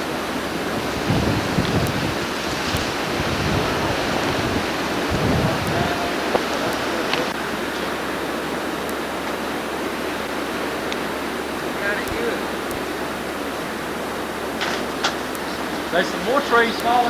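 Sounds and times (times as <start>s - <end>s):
wind buffeting microphone: 0.0s - 8.9s
rushing storm wind: 0.0s - 17.0s.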